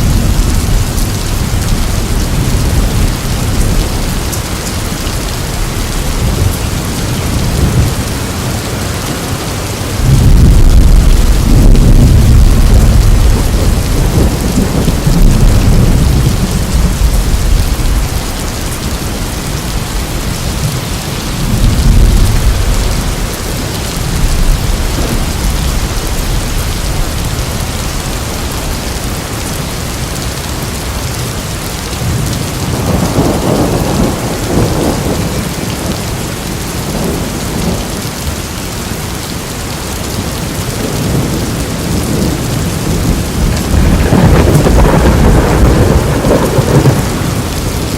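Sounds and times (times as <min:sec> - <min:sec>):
heavy rain falling: 0:00.0 - 0:47.9
rolling thunder: 0:10.0 - 0:28.8, 0:32.0 - 0:36.0, 0:40.8 - 0:47.9.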